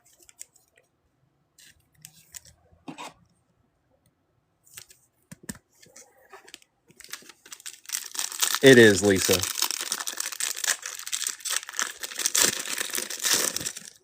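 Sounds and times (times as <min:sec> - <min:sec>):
cards and wrappers handled: 0:00.0 - 0:00.9, 0:04.7 - 0:14.0.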